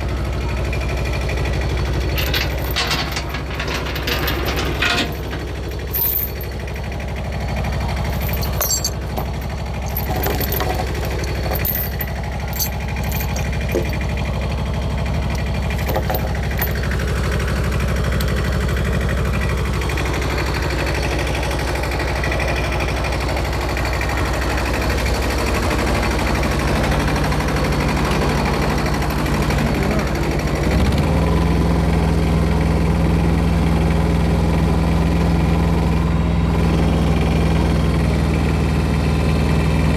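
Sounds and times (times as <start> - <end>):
engine running: 0.0 - 39.9
knocks and clanks: 2.0 - 6.6, 8.1 - 14.1, 15.7 - 16.9.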